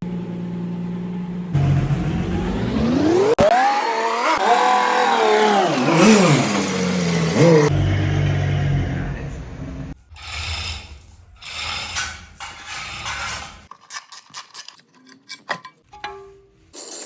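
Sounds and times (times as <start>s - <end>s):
engine running: 0.0s - 10.8s
tools and engine parts handled: 10.4s - 16.7s.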